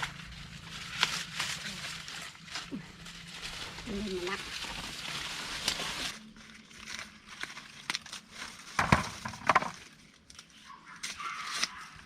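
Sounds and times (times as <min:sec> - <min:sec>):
corn stalks snapping: 0:00.0 - 0:02.8, 0:04.5 - 0:09.2
dry corn leaves rustling: 0:00.0 - 0:12.0.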